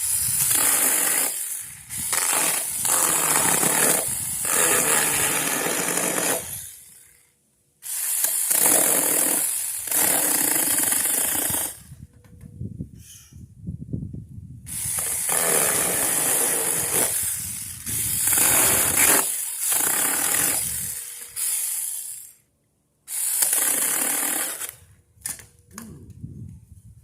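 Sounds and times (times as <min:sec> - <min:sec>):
saw cutting through branches: 0:00.0 - 0:07.1, 0:07.8 - 0:11.8, 0:14.7 - 0:22.3, 0:23.1 - 0:24.8.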